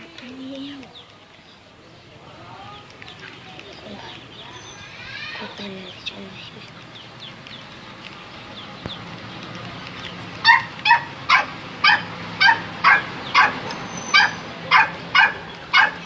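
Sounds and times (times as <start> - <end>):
dog barking: 10.4 - 16.0.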